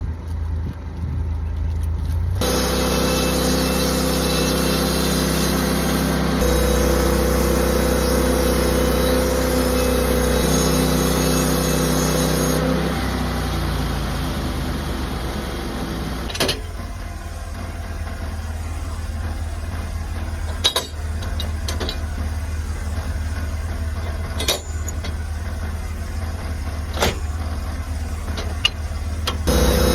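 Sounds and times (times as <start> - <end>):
sawmill engine running: 1.2 - 29.9
saw cutting through log: 2.4 - 16.3, 28.2 - 29.9.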